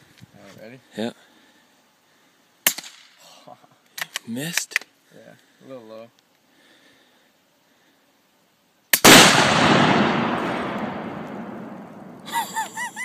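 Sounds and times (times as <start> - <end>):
suppressed rifle shot crack: 2.6 - 3.1, 8.9 - 12.3
explosion boom echoing: 9.1 - 12.3.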